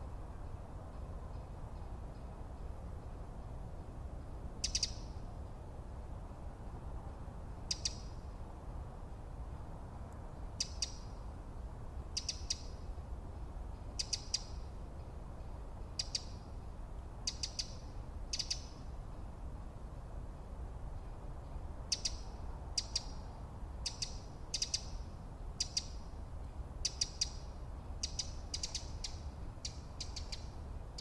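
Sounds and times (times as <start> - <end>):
low wind rumble: 0.0 - 31.0
small bird chipping: 4.6 - 5.3, 7.7 - 8.3, 10.6 - 11.2, 12.1 - 12.9, 14.0 - 14.7, 15.9 - 16.5, 17.3 - 18.9, 21.9 - 26.1, 26.8 - 31.0.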